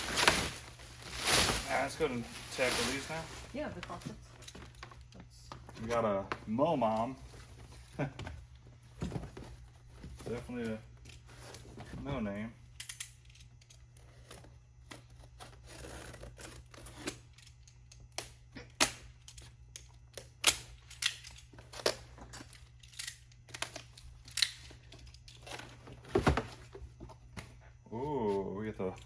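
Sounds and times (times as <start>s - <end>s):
cardboard tearing and crinkling: 0.0s - 3.7s.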